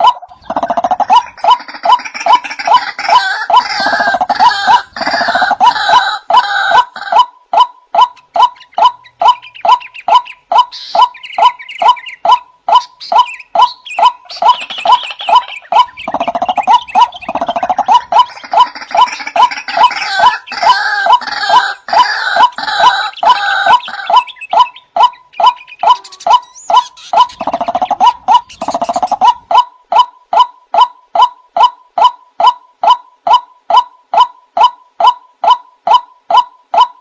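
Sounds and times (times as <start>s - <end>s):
gurgling bird chatter: 0.0s - 36.9s
waterhen croaking calls: 0.0s - 37.0s.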